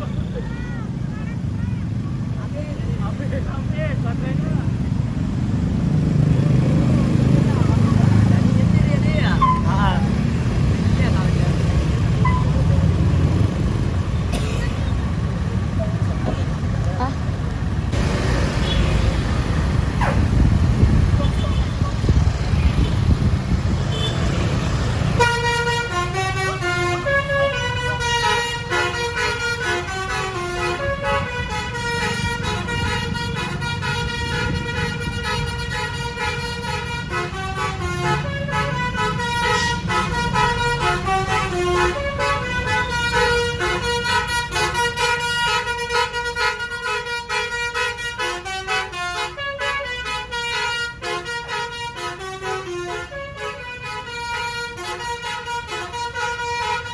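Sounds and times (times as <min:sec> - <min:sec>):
engine and road rumble: 0:00.0 - 0:56.9
bus horn playing a melody: 0:23.8 - 0:56.9.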